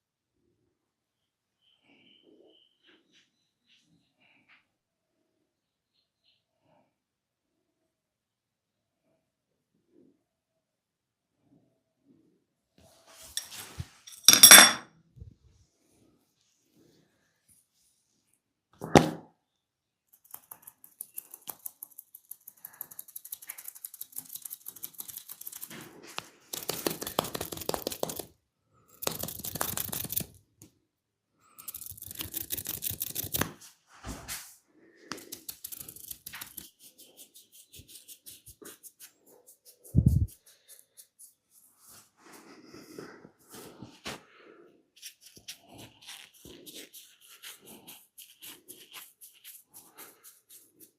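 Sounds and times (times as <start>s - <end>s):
massage rubbing: 36.3s - 42.0s.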